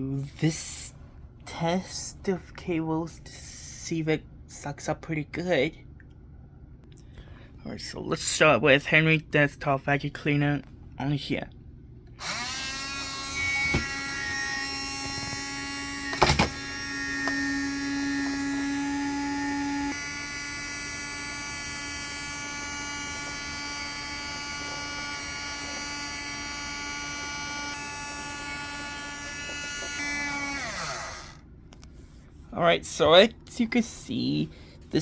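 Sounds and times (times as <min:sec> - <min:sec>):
mini vacuum cleaner running: 0:12.2 - 0:31.4.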